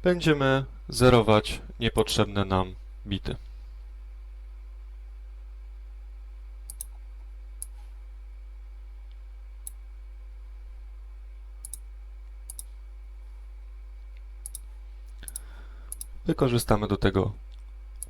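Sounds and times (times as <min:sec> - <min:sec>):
steady low hum: 0:00.0 - 0:18.0
computer mouse clicks: 0:06.7 - 0:07.0, 0:11.6 - 0:11.8, 0:12.5 - 0:12.7, 0:14.4 - 0:16.1.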